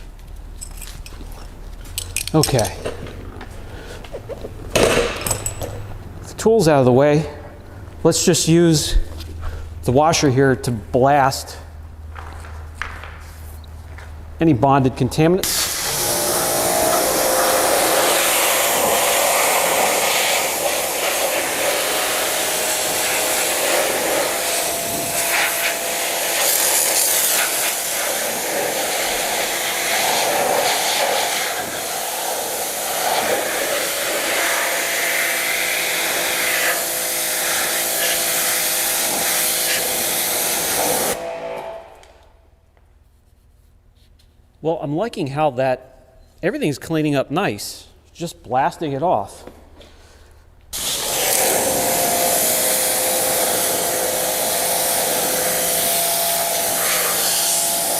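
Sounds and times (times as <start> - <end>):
pressure washer spraying water: 15.4 - 41.8, 50.8 - 57.9.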